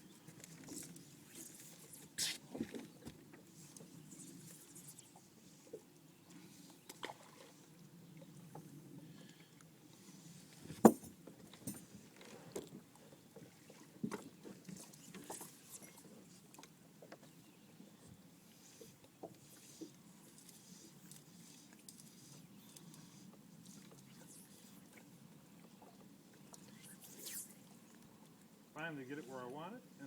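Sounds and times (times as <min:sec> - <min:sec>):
knocks and clicks in a boat: 0:10.7 - 0:17.4.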